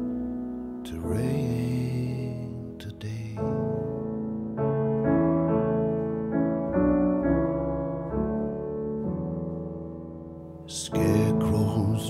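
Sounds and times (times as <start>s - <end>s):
slow piano chords: 0.0s - 12.0s.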